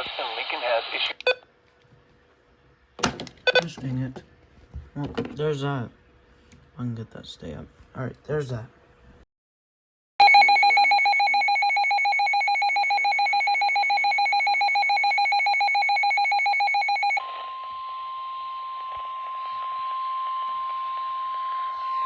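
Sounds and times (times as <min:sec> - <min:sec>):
radio hiss: 0:00.0 - 0:01.2
steady weather radio alarm tone: 0:10.2 - 0:22.0.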